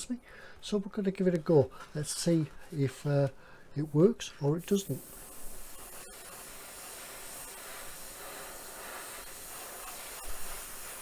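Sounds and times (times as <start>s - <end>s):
airbrush spraying hiss: 4.6s - 11.0s.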